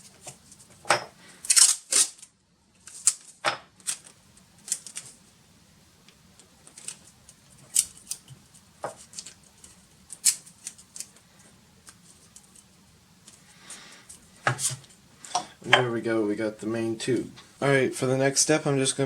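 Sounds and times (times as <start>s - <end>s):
tape ripping: 1.4s - 2.3s
tape clicks and crackles: 1.4s - 5.2s, 6.0s - 13.4s.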